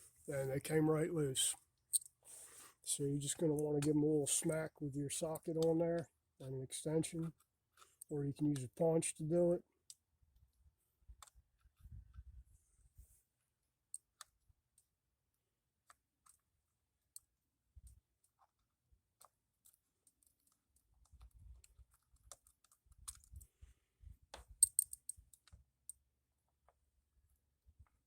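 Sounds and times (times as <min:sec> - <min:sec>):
metallic clicks of hand tools: 0:24.6 - 0:26.0.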